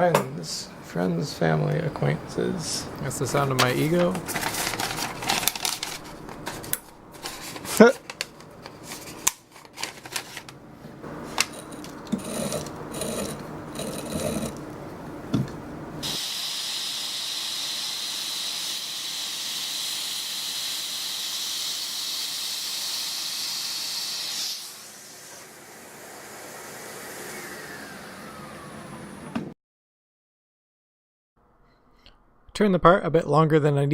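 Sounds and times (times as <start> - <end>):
lathe tool cutting wood hiss: 16.0 - 29.2.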